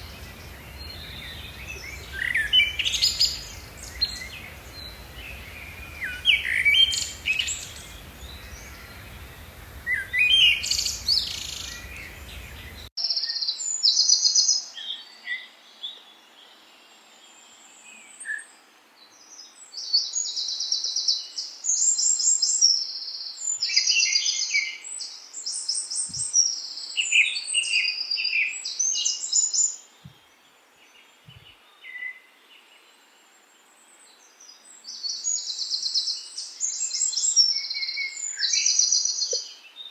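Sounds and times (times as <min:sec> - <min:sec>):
background hiss and hum: 0:00.0 - 0:12.9
songbirds chirping and trilling: 0:00.0 - 0:13.5.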